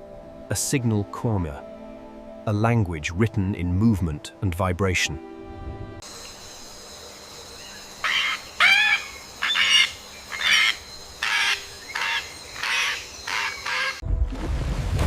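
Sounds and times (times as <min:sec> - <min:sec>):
bird squawking: 0:08.0 - 0:14.0.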